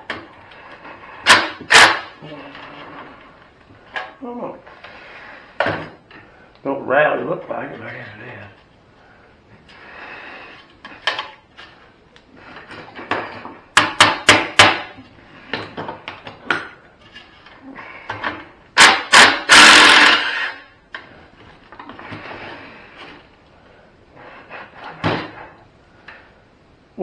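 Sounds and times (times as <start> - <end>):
hand tools knocking and clattering: 13.0 - 14.9
loud scraping: 18.8 - 20.8.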